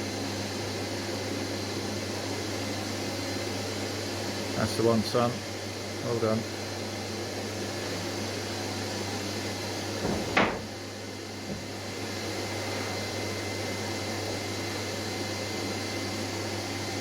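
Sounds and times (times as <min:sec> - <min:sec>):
background hum and hiss: 0:00.0 - 0:17.0
wooden boards knocking: 0:10.0 - 0:10.7.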